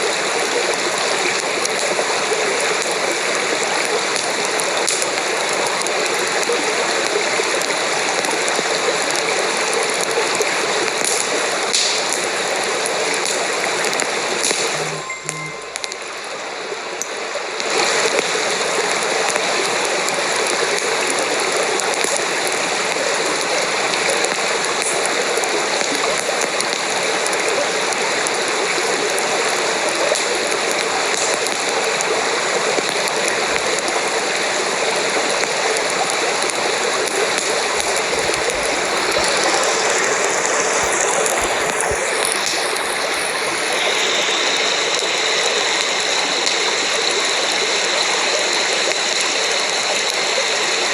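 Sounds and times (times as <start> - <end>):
rush of flowing water: 0.0 - 50.9.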